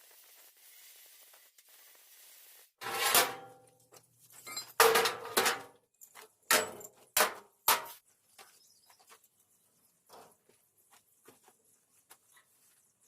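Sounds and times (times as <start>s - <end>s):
steel pieces clanking: 4.4s - 6.9s.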